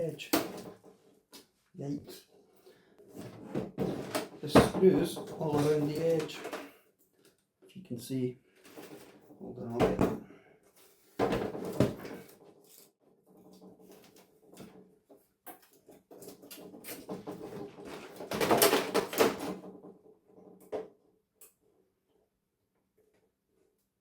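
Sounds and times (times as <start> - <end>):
plastic casing and tools clattering: 0.2 - 1.0, 2.6 - 6.8, 8.6 - 10.2, 11.0 - 21.0.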